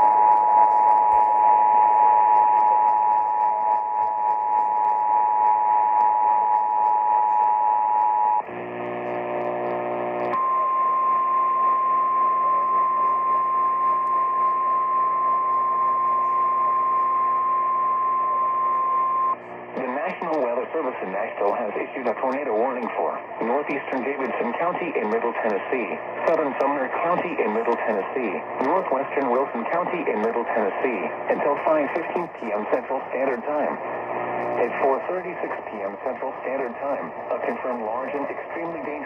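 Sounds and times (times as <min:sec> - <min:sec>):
radio static: 0:00.0 - 0:39.0
steady high alarm tone: 0:10.4 - 0:19.4.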